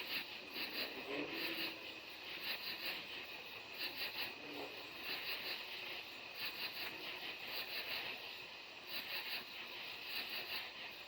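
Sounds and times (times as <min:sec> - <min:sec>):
insects chirping: 0:00.0 - 0:11.0.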